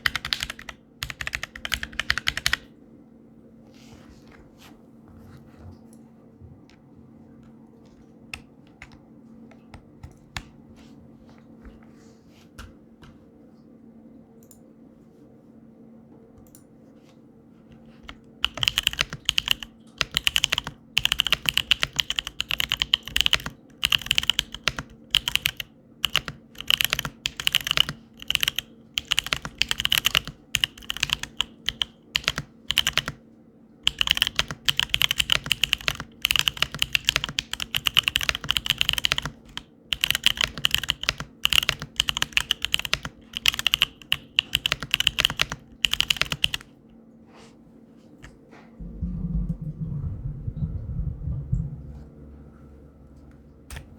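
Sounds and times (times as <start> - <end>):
typing on mechanical keyboard: 0.0 - 2.7, 18.0 - 33.2, 33.8 - 46.7
low steady hum: 0.0 - 53.9.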